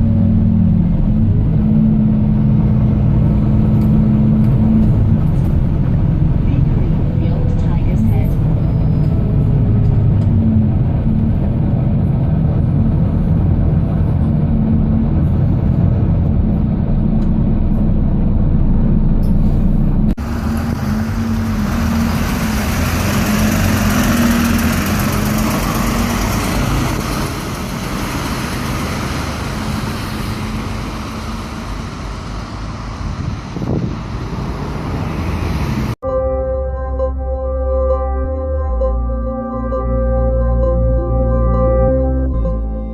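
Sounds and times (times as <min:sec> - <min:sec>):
road and tyre noise: 0:00.0 - 0:37.3
bus engine drone: 0:00.0 - 0:42.9.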